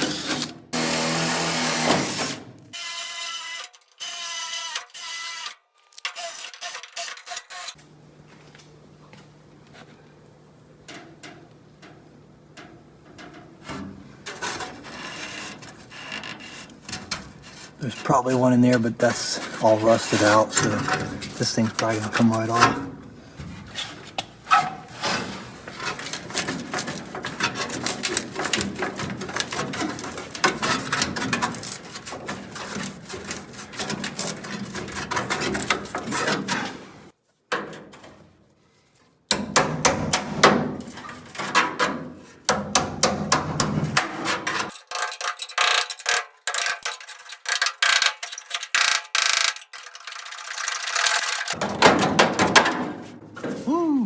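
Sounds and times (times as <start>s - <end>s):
hand tools striking rusted steel: 16.9s - 22.8s, 39.3s - 49.0s.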